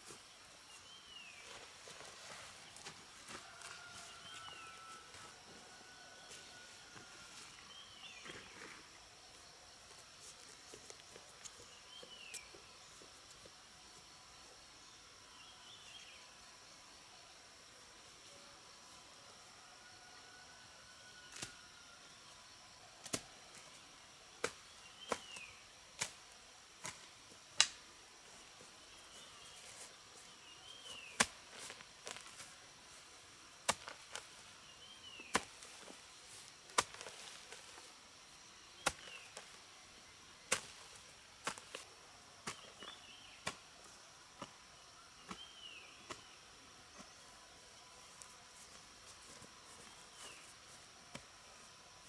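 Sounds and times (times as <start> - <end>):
insect whine: 0.0 - 52.0.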